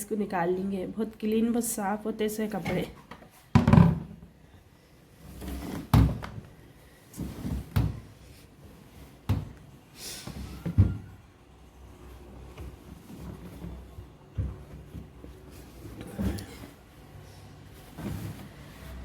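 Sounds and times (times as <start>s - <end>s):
washing machine door and drum thuds: 3.5s - 4.2s
fabric rustling: 12.0s - 19.0s.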